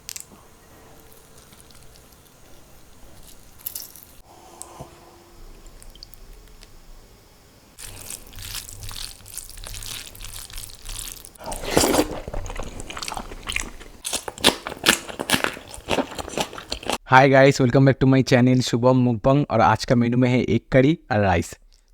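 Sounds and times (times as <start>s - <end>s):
person chewing food: 0.0s - 4.2s, 7.8s - 17.0s.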